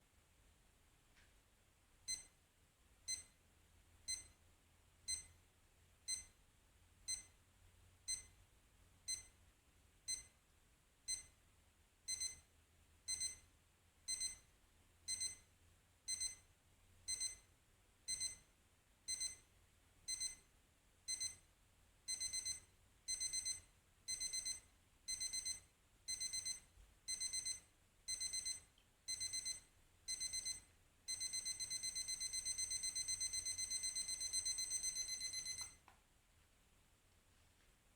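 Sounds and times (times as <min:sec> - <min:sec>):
alarm clock beeping: 0:12.1 - 0:12.4, 0:13.1 - 0:13.4, 0:14.1 - 0:14.4, 0:15.1 - 0:15.4, 0:16.1 - 0:16.4, 0:17.1 - 0:17.4, 0:18.1 - 0:18.4, 0:19.1 - 0:19.4, 0:20.1 - 0:20.4, 0:21.1 - 0:21.4, 0:22.1 - 0:35.8.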